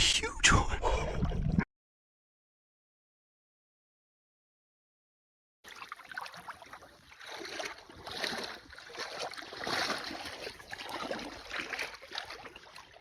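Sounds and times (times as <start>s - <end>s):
water lapping against boat: 5.7s - 13.0s.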